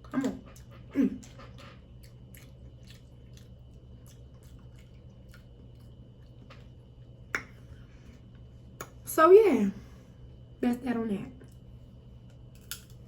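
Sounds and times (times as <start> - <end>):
wet chewing and mouth clicks: 0.0 - 7.6
steady low hum: 0.0 - 13.0.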